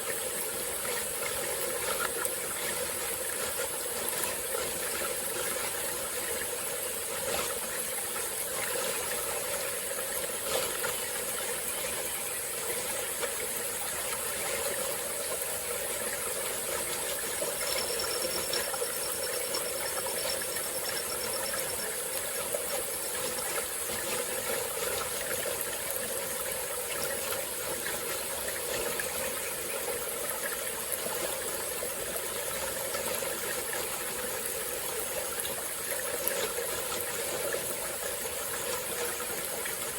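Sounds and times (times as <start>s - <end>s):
stream flowing over rocks: 0.0s - 39.9s
high rapidly pulsing tone: 17.2s - 22.1s.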